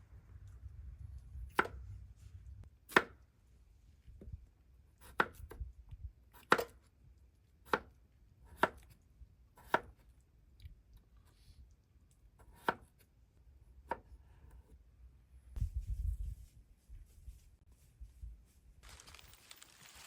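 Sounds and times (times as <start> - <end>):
sharp chopping strikes: 2.9 - 3.2.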